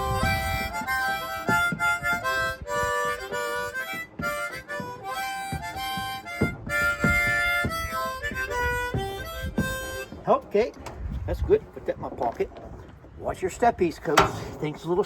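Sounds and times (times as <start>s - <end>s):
backing track: 0.0s - 10.5s
harmonica melody: 0.0s - 10.5s
sharp knocks: 0.1s - 11.0s, 14.1s - 14.8s.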